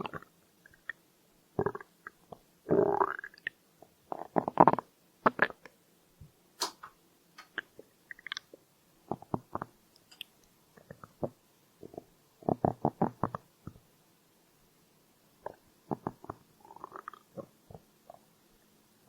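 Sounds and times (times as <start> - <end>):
stomach gurgling: 0.0 - 1.0, 1.6 - 5.7, 7.6 - 9.8, 10.8 - 13.8, 15.4 - 18.3.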